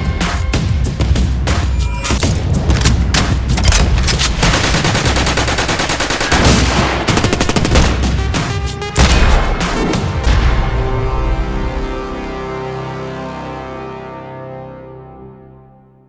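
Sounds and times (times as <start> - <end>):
automatic gunfire: 2.9 - 8.2.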